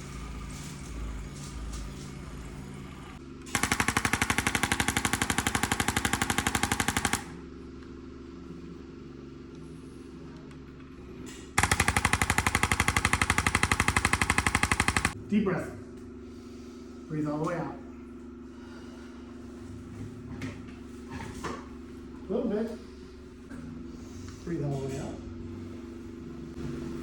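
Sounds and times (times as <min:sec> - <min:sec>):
rapid mechanical pounding: 0:03.5 - 0:07.4, 0:11.6 - 0:15.2.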